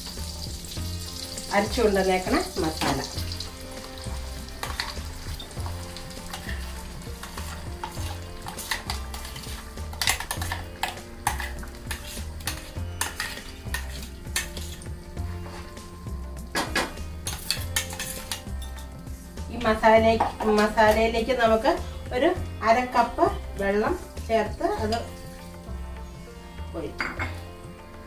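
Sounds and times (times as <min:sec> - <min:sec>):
paste sizzling in a pan: 0:00.0 - 0:15.9
spoon scraping and knocking pan: 0:02.2 - 0:19.0, 0:20.1 - 0:21.0, 0:27.0 - 0:27.5.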